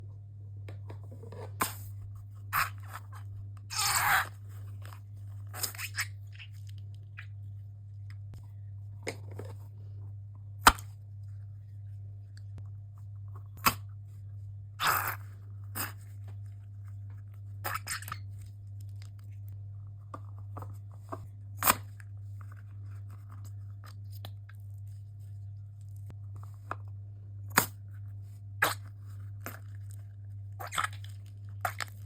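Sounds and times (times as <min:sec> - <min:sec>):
steady low hum: 0:00.0 - 0:32.0
slime crunching and crackling: 0:28.6 - 0:32.0.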